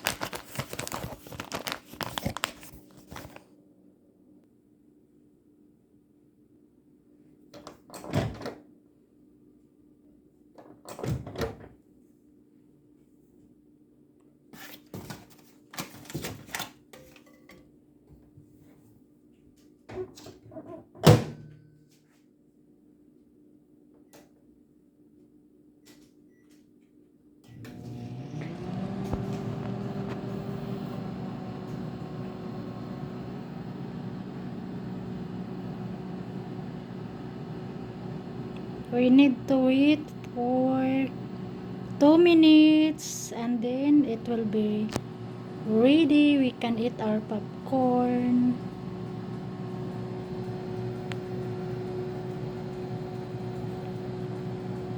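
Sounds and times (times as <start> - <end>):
microwave oven humming: 27.4 - 54.9.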